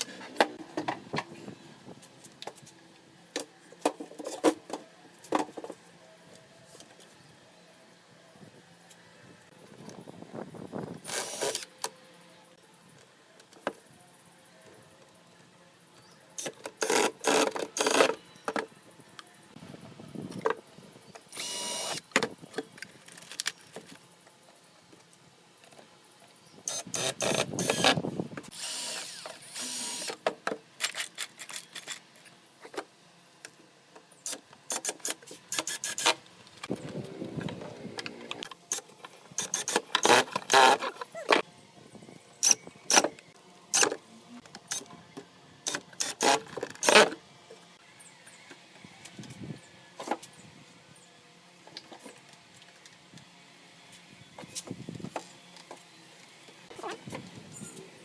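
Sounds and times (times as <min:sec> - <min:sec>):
power drill running: 0:11.1 - 0:11.6, 0:21.4 - 0:22.0, 0:26.7 - 0:30.2.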